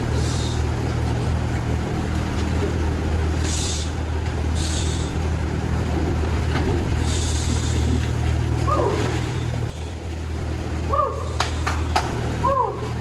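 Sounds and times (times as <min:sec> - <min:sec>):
vehicle engine running: 0:00.0 - 0:13.0
hissing bursts: 0:03.4 - 0:05.2.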